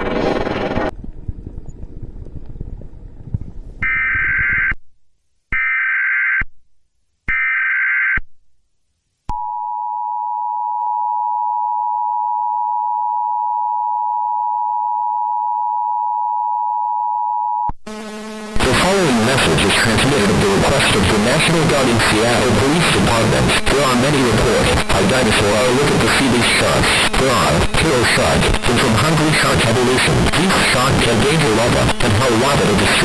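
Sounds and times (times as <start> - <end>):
low rumble: 0.0 - 3.8
loud music: 17.9 - 30.0
data bursts: 17.9 - 33.0.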